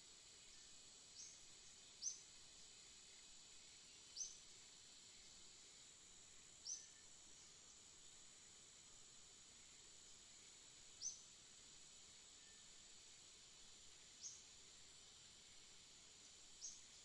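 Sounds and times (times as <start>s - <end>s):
faint high-pitched hiss: 0.0s - 17.0s
small bird chirping: 1.2s - 2.3s, 6.6s - 7.0s, 11.0s - 11.3s, 14.1s - 14.5s, 16.2s - 17.0s.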